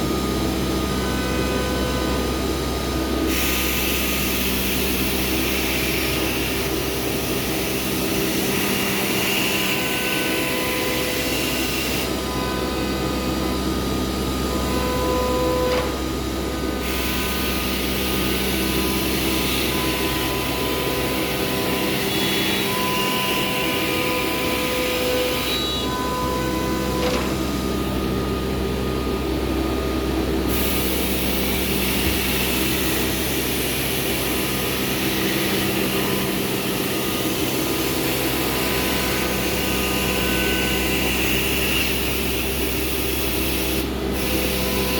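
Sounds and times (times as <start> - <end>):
machine hum: 0.0 - 44.9.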